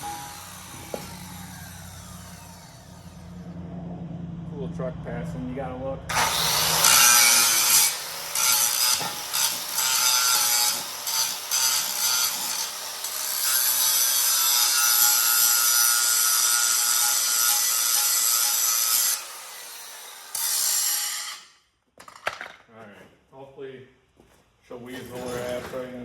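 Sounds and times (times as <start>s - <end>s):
angle grinder grinding steel: 0.0s - 3.6s, 6.1s - 21.5s.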